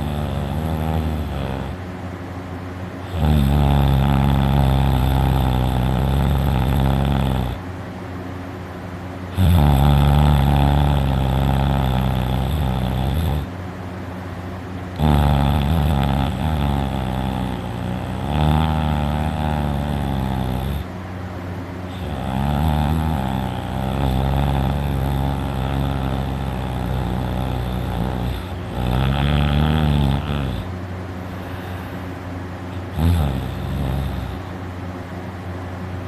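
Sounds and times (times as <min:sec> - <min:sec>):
person snoring loudly: 0:00.0 - 0:01.8, 0:03.0 - 0:07.6, 0:09.3 - 0:13.5, 0:14.9 - 0:20.9, 0:21.9 - 0:30.7, 0:32.7 - 0:34.6
quiet breathing: 0:21.9 - 0:34.6.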